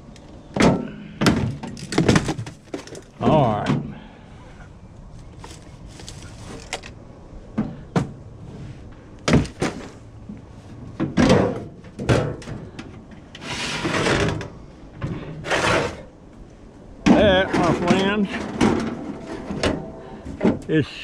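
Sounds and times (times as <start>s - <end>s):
microwave parts clunking: 0.5s - 3.8s, 17.0s - 20.7s
scraping: 13.4s - 16.2s, 17.0s - 20.8s.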